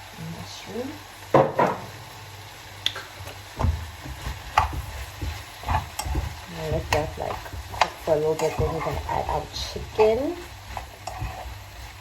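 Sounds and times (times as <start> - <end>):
spoon stirring and knocking pan: 3.1 - 12.0.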